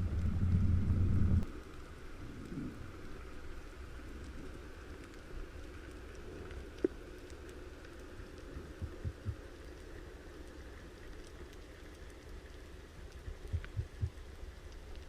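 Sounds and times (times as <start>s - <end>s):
loud low rumble: 0.0s - 1.4s
small clicks and crackles: 1.2s - 15.0s.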